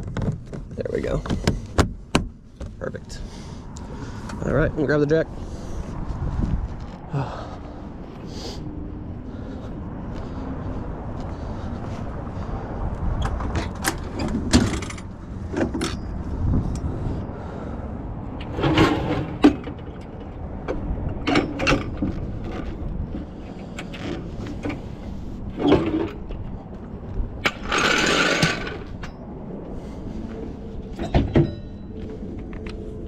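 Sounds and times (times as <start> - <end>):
steady low rumble: 0.4 - 33.0
metal tools clanking: 27.4 - 29.2, 31.0 - 32.0
scraping rattle: 27.4 - 29.2.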